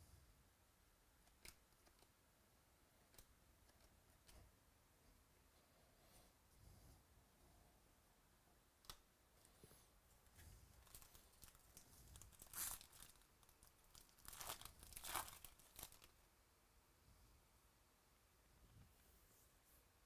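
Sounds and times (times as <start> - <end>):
foil packs tearing and crinkling: 10.8 - 16.1.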